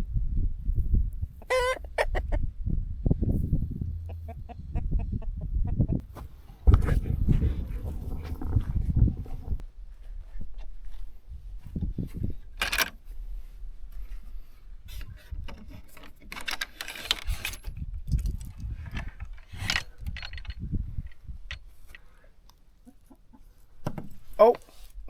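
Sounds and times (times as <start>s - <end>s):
low bumps: 0.7s - 9.7s
clinks and rattles of handling: 15.5s - 22.2s.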